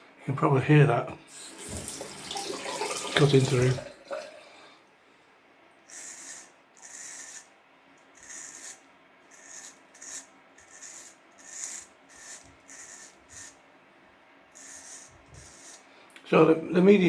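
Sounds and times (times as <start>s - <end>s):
razor scraping stubble: 5.9s - 7.5s, 8.1s - 13.6s, 14.5s - 15.9s.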